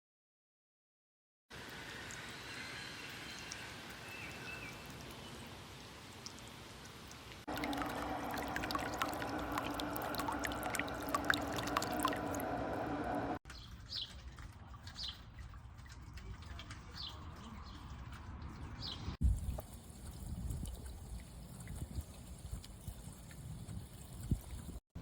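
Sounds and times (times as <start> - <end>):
water trickling: 1.6 - 18.2, 19.2 - 24.8
fountain water splashing: 3.8 - 16.8.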